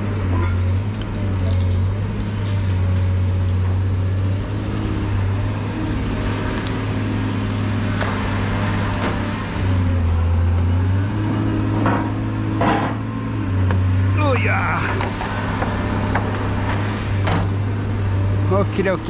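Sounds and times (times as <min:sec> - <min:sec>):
motor humming: 0:14.2 - 0:18.0.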